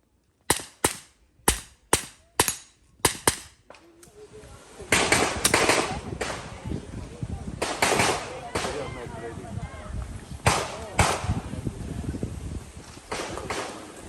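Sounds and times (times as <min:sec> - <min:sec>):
gunshots: 0:00.5 - 0:03.6.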